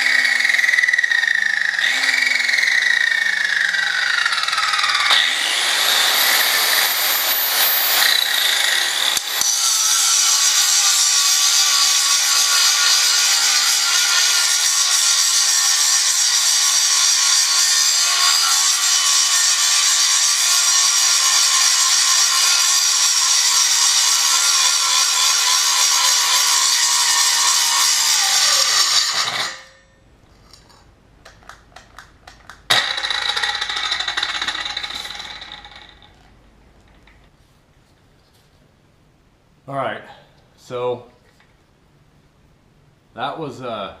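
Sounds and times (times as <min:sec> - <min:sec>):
angle grinder grinding metal: 0:00.0 - 0:30.0, 0:32.7 - 0:36.3.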